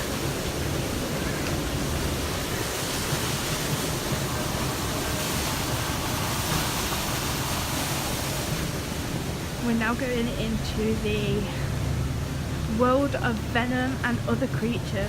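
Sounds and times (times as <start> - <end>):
waterfall splashing: 0.0 - 15.0.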